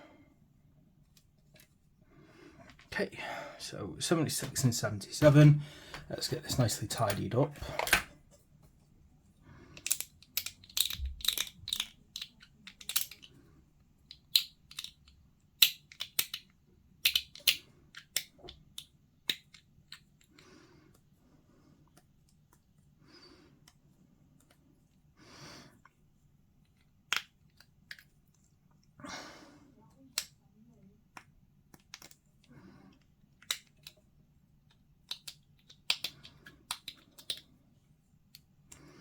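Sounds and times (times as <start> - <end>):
hobby tools clicking and snipping: 9.8 - 13.3.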